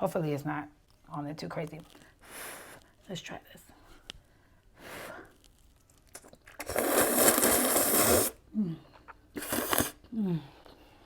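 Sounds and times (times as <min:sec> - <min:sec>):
person slurping noodles: 0:06.2 - 0:08.4, 0:09.0 - 0:10.0.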